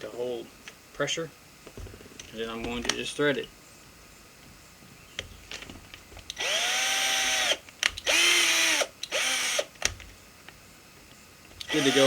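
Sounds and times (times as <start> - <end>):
drill motor whine: 6.3 - 9.7, 11.6 - 12.0.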